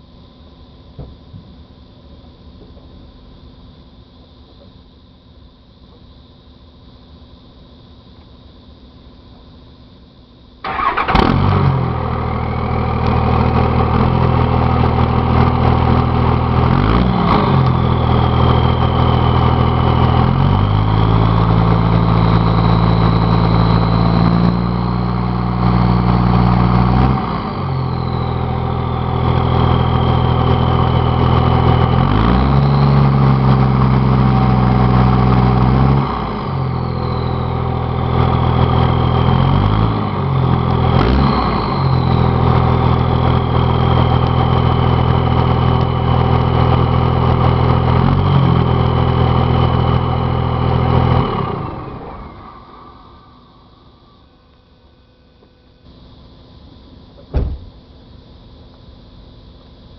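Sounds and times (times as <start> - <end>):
diesel engine starting and revving: 10.6 - 54.3
turbocharger whistle: 10.6 - 54.4.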